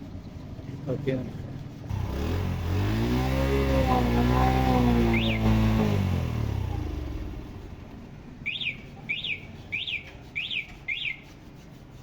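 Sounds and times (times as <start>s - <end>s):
motorcycle engine revving: 1.9s - 8.1s.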